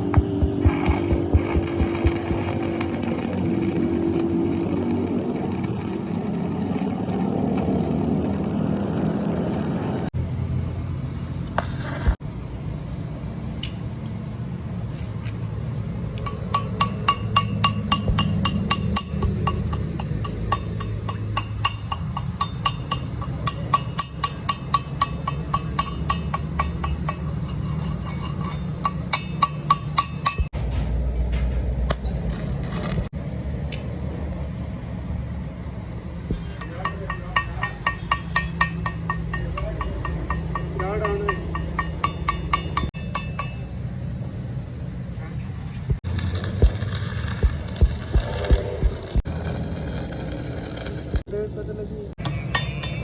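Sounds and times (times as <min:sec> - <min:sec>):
hammer striking steel: 0:00.0 - 0:10.1, 0:36.6 - 0:43.8.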